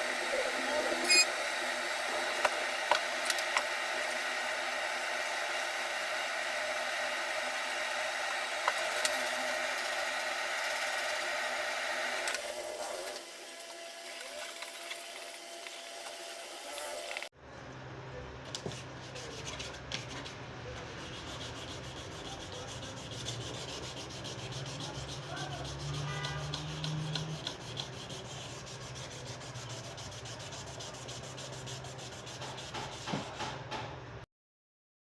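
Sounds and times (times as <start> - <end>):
sanding plastic: 18.8 - 33.6.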